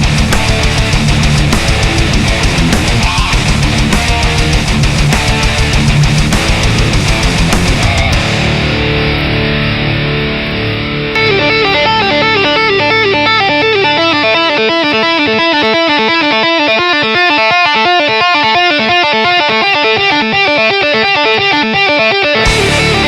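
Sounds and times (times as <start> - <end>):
rapid drumming: 0.0 - 9.0, 22.4 - 23.0
death metal electric guitar: 0.0 - 23.0.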